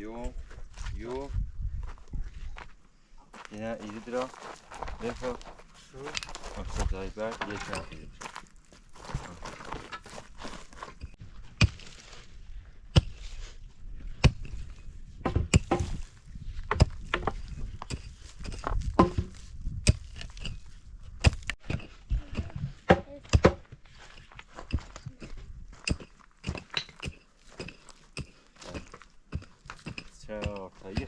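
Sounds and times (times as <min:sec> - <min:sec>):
sharp knocks or impacts: 0:18.8 - 0:20.0.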